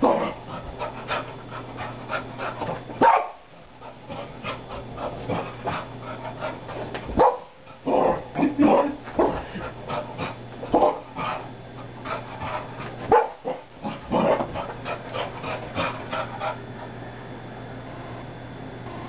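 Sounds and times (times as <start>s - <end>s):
dog panting: 0.5s - 2.8s, 3.8s - 6.9s, 11.2s - 13.0s, 14.6s - 16.6s
dog barking: 3.0s - 3.4s, 7.2s - 8.9s, 13.1s - 13.6s.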